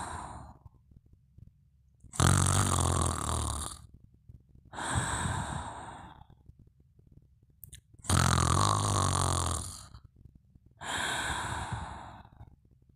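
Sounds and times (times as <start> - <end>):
person snoring: 0.0 - 0.6, 2.1 - 3.9, 4.8 - 6.3, 8.0 - 10.0, 10.8 - 12.4
soft breathy breath: 0.0 - 0.8, 4.7 - 6.4, 10.8 - 12.6.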